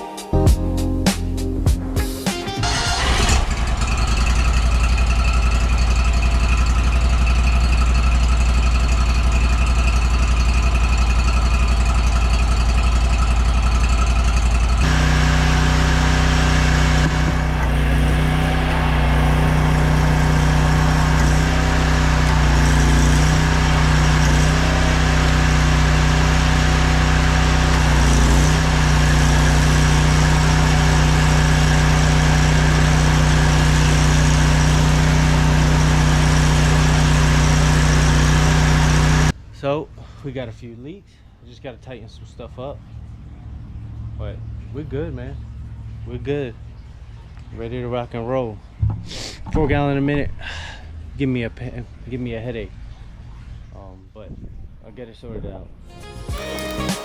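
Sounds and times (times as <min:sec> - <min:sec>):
pressure washer engine running: 0:02.5 - 0:39.4, 0:56.3 - 0:57.0.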